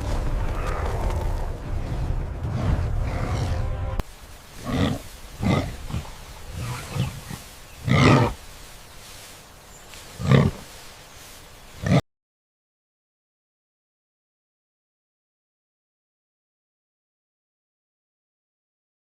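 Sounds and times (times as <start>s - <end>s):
large animal roaring: 0.0s - 8.4s
loud rumbling noise: 0.0s - 9.1s.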